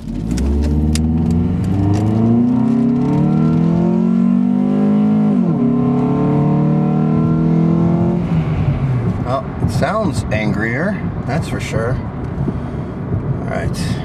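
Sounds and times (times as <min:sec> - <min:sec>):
car engine accelerating: 0:00.0 - 0:09.8.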